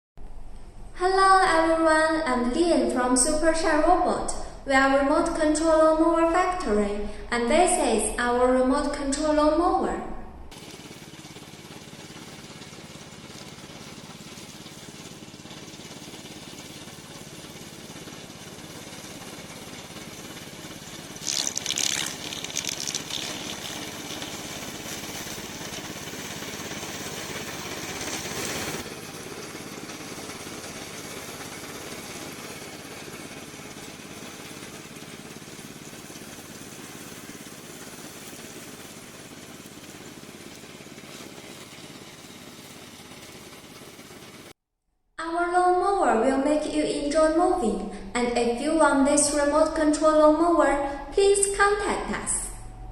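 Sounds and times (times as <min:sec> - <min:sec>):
remote-control mower running: 0:10.5 - 0:44.5.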